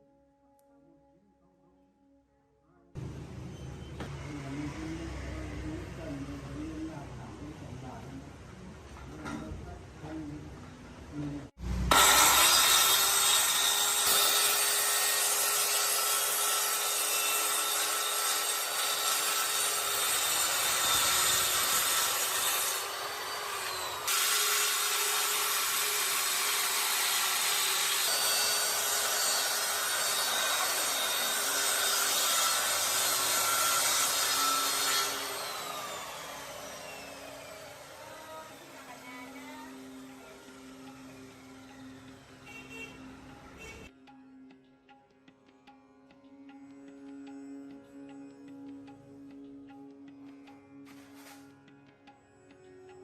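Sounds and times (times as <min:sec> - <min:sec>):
saw motor winding down: 0:11.6 - 0:43.8
electric saw cutting wood: 0:11.6 - 0:44.5, 0:45.4 - 0:53.0.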